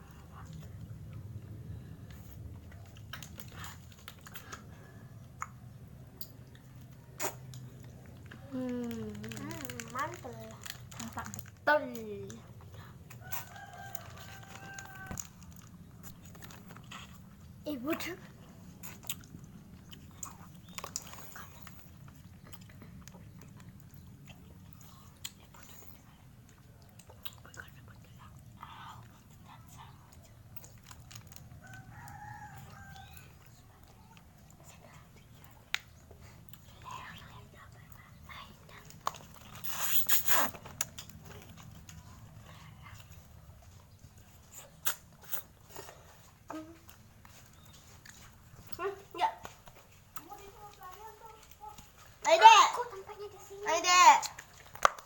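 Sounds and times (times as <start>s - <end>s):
mouth sounds of eating: 0.0s - 55.0s
wet lip smacks: 7.2s - 7.7s, 39.5s - 41.1s, 44.5s - 45.8s
slurping ice cream: 39.0s - 42.4s.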